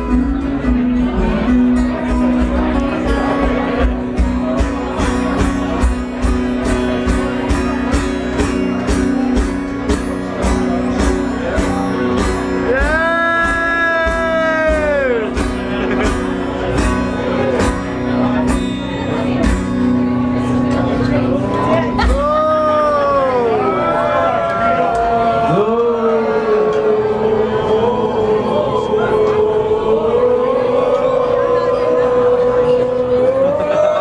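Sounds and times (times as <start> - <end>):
bending lead guitar note: 0.0 - 25.0
live band playing: 0.0 - 25.1
drums beating: 0.8 - 18.8.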